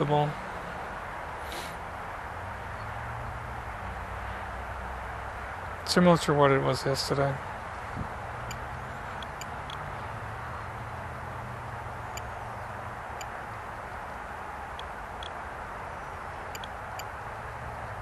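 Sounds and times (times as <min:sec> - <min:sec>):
steady hiss: 0:01.4 - 0:01.9
faint high ticks: 0:09.2 - 0:09.8, 0:11.6 - 0:12.3, 0:13.2 - 0:13.4, 0:16.5 - 0:17.1.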